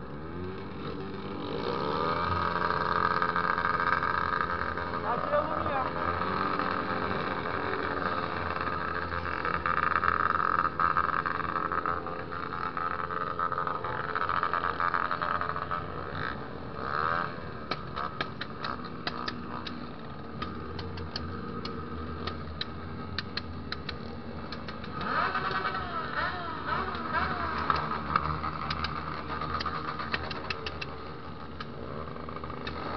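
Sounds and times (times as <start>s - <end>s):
motorcycle engine running: 0.0s - 32.9s
sharp clicks: 17.7s - 25.6s, 26.8s - 31.8s, 32.6s - 32.9s.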